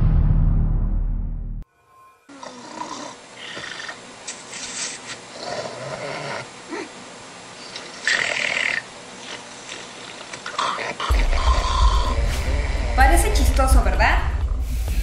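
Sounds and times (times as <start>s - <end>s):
person snoring: 2.3s - 4.0s, 11.1s - 13.2s.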